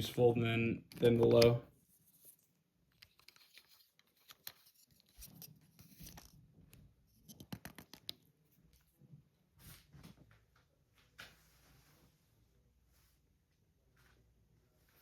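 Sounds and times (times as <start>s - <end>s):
faint clicks and rustles: 1.0s - 12.1s.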